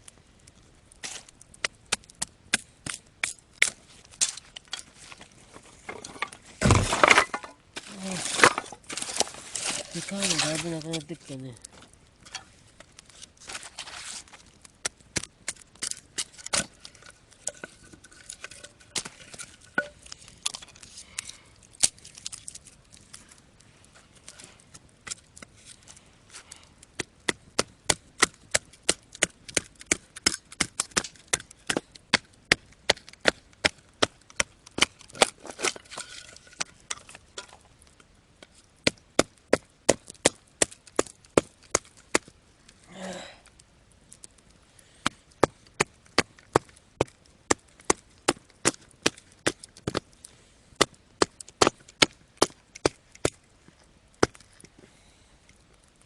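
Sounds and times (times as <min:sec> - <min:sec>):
axe chopping firewood: 0:01.0 - 0:04.8, 0:06.1 - 0:11.1, 0:12.3 - 0:17.7, 0:26.9 - 0:37.6, 0:38.8 - 0:42.4, 0:45.0 - 0:50.1, 0:50.8 - 0:53.4, 0:54.2 - 0:54.4.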